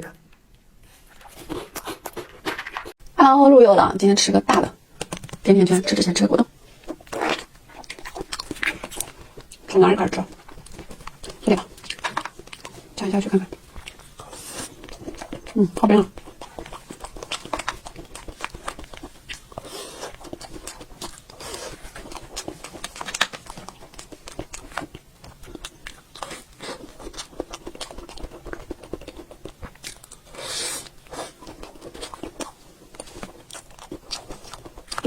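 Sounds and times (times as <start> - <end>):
biting and chewing jelly: 4.9 - 35.0.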